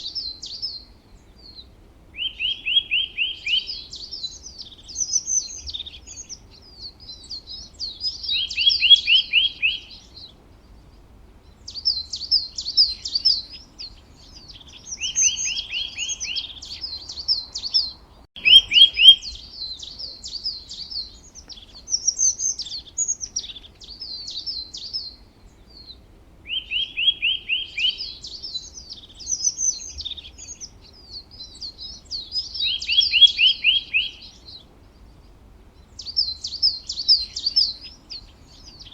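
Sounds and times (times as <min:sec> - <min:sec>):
songbird singing: 0:00.0 - 0:38.9.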